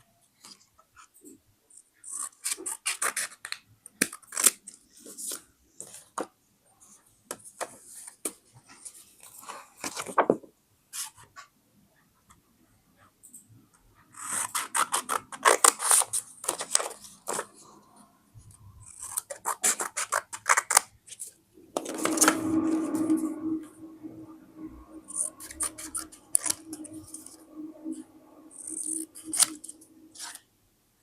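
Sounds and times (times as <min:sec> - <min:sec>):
scissors cutting paper: 0:02.0 - 0:04.7, 0:14.1 - 0:17.5, 0:18.8 - 0:22.3, 0:25.1 - 0:27.4, 0:28.6 - 0:30.4.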